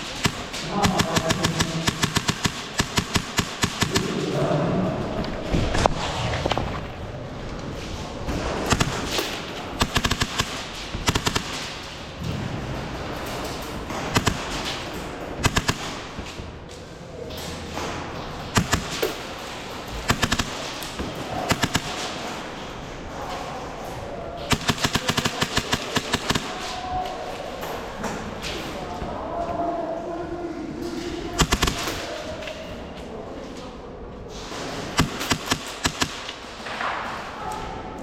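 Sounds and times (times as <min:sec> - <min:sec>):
airsoft guns firing bursts: 0:00.0 - 0:04.4, 0:08.6 - 0:12.0, 0:14.0 - 0:16.3, 0:18.5 - 0:22.5, 0:24.5 - 0:26.8, 0:31.4 - 0:32.1, 0:35.0 - 0:36.6.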